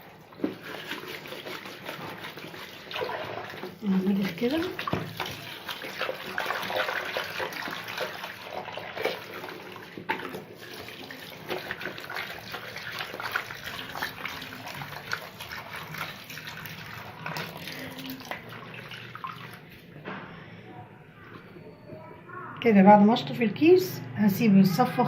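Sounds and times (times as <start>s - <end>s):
tap water running: 0.0s - 20.0s
water splashes: 0.3s - 19.8s.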